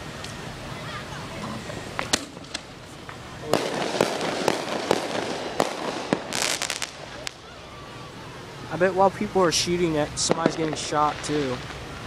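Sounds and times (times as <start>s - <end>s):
firecrackers popping: 1.6s - 7.6s, 10.2s - 12.0s.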